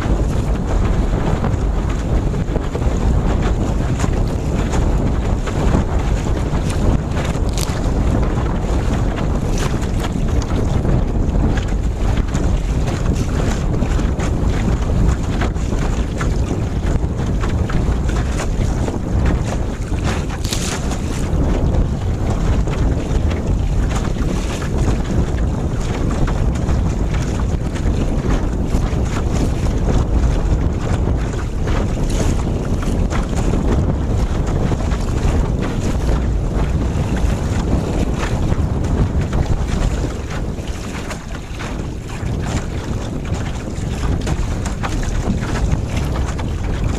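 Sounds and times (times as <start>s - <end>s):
low rumble: 0.0s - 25.1s
water splashing along hull: 0.0s - 46.9s
wind buffeting microphone: 0.0s - 46.9s.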